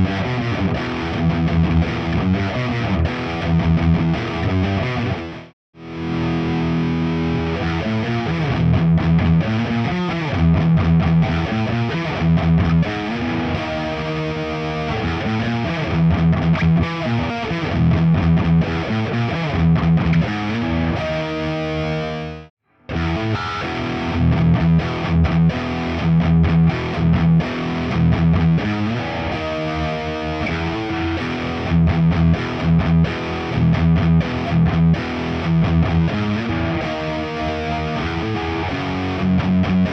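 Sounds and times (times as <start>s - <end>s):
distorted electric guitar riffing: 0.0s - 39.9s.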